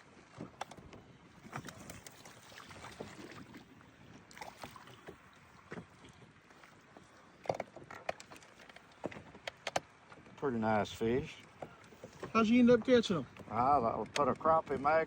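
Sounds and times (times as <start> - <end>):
knocks and clicks from handling gear: 7.4 - 9.9.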